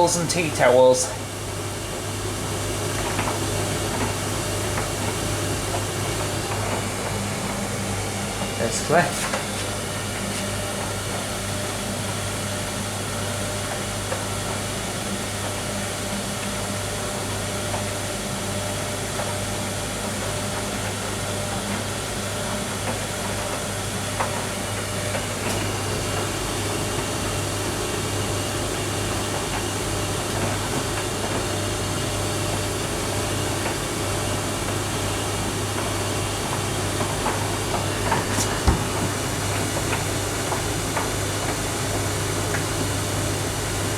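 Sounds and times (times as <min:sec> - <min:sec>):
tumble dryer running: 0:00.0 - 0:43.9
soft knocks of tumbling load: 0:37.7 - 0:39.3.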